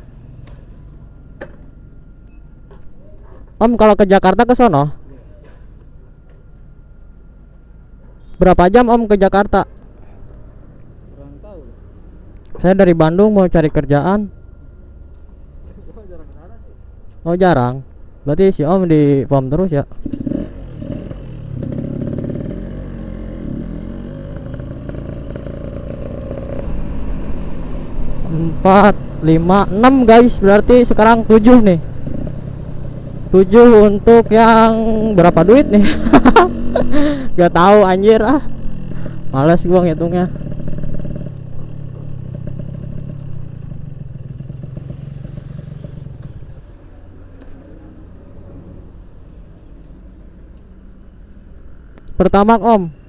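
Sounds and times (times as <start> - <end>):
two-stroke motorcycle engine: 19.9 - 46.7
two-stroke motorcycle engine running: 38.1 - 46.5.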